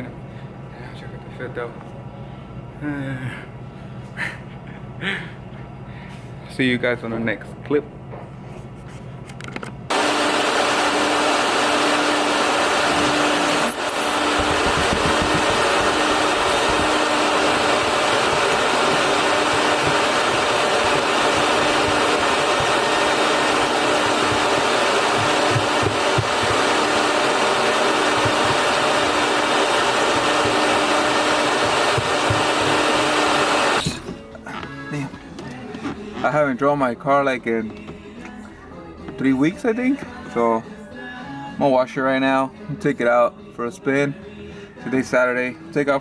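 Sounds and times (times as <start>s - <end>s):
machine running loud and steady: 9.9s - 34.0s.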